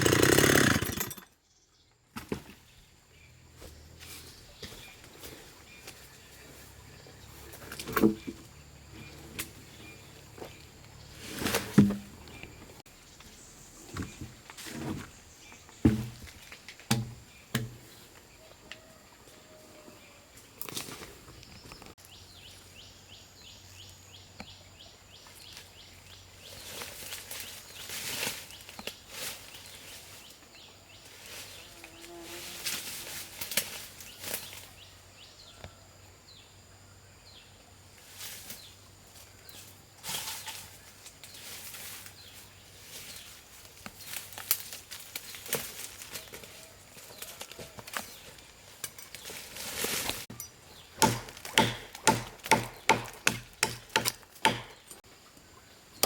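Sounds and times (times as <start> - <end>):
rustling: 9.0 - 16.8, 26.4 - 30.4, 39.5 - 50.4.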